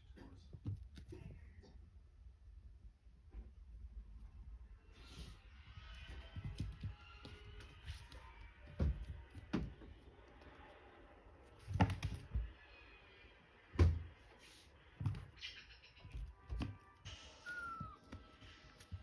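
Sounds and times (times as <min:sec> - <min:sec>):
dull thumps and knocks: 0:11.6 - 0:12.5.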